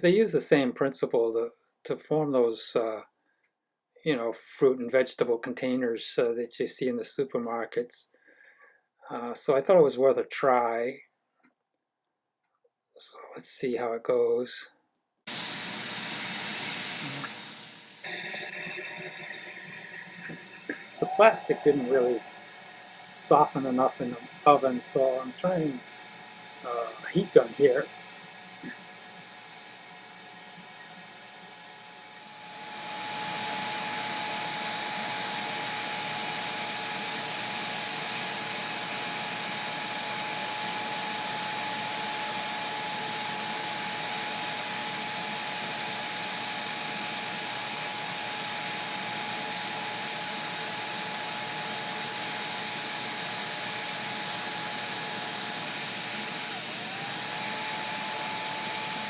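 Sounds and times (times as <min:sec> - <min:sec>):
heat gun blowing air: 0:15.3 - 0:59.0.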